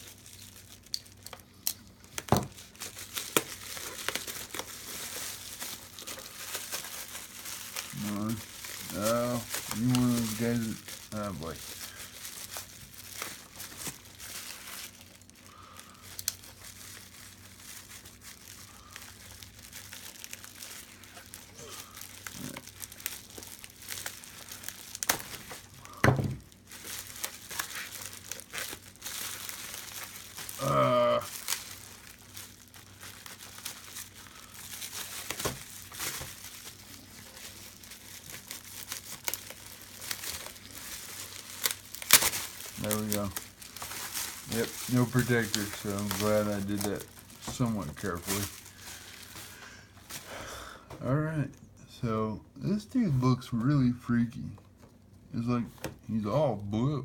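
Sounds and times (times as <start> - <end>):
packing material crinkling: 0.0 - 50.5
tape tearing: 0.7 - 15.3, 19.3 - 49.5.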